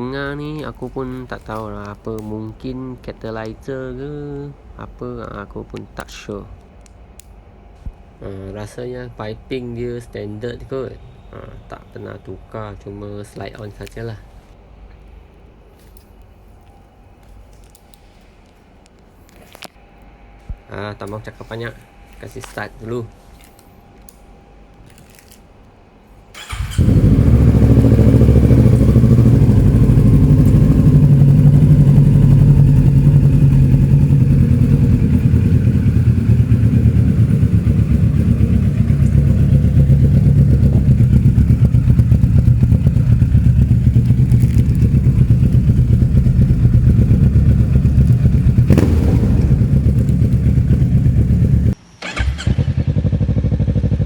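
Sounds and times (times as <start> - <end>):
motorcycle engine idling: 26.4 - 51.8.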